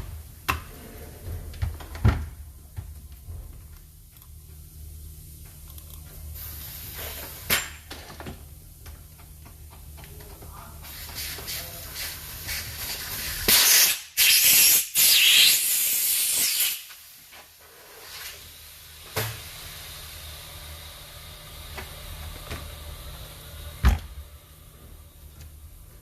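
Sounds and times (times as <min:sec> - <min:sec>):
pressurised gas hissing: 0:06.4 - 0:07.8, 0:10.8 - 0:21.6.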